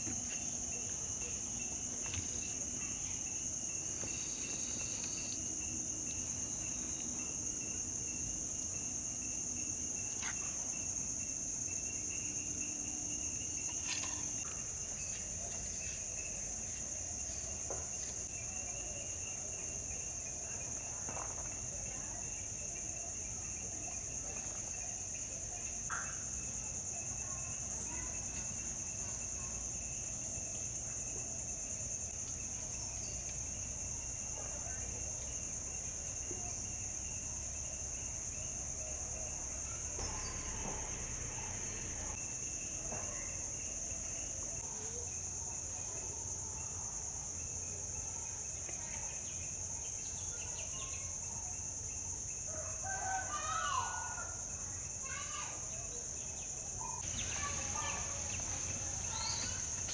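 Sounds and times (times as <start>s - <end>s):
high-pitched insect chorus: 0.0s - 59.9s
faint bird calls: 57.0s - 59.9s.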